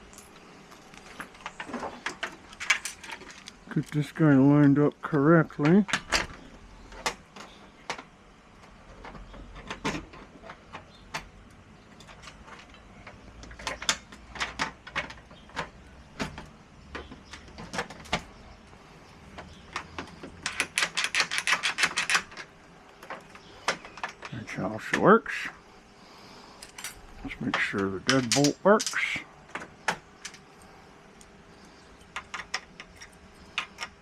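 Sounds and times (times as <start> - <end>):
metal door hardware clicking: 19.4 - 24.4.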